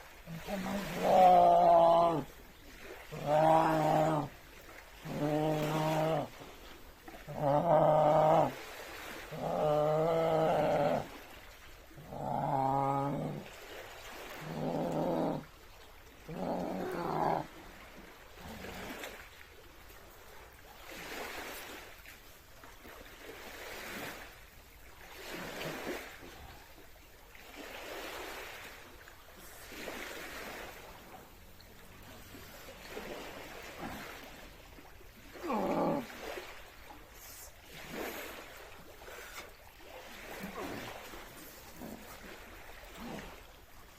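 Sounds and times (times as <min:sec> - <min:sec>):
man roaring with effort: 0:00.3 - 0:02.4, 0:03.1 - 0:04.4, 0:05.0 - 0:06.4, 0:07.2 - 0:08.6, 0:09.3 - 0:11.2, 0:12.0 - 0:13.5, 0:14.4 - 0:15.5, 0:16.3 - 0:17.6, 0:35.4 - 0:36.3.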